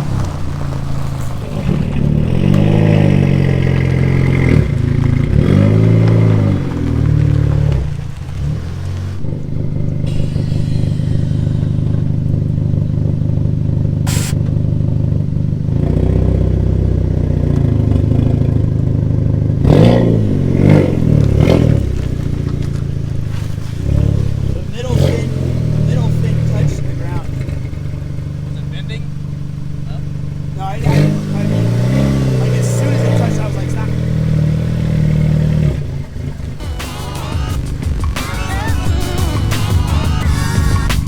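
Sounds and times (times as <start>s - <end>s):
car engine revving: 0.0s - 41.0s
brief hiss: 10.0s - 12.1s, 14.1s - 14.5s.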